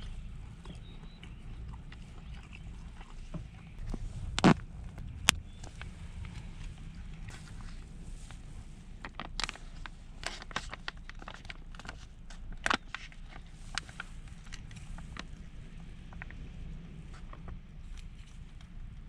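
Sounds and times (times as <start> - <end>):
low rumble: 0.0 - 11.3.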